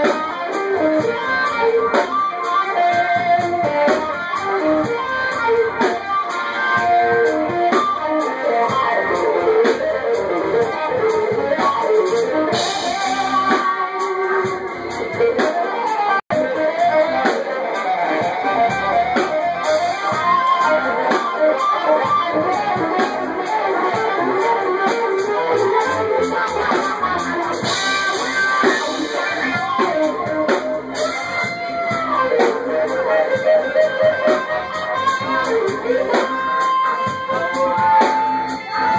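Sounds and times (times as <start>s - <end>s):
live band led by guitar: 0.0s - 38.9s.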